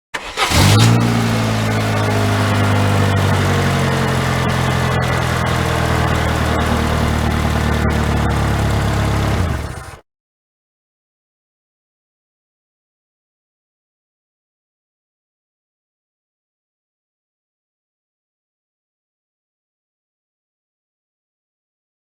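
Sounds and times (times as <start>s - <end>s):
car engine starting and idling: 0.1s - 10.0s.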